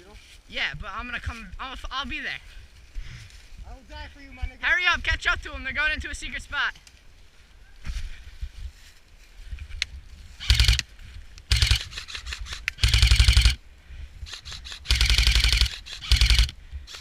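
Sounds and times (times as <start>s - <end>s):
airsoft gun firing bursts: 10.4s - 10.9s, 11.5s - 13.6s, 14.2s - 17.0s.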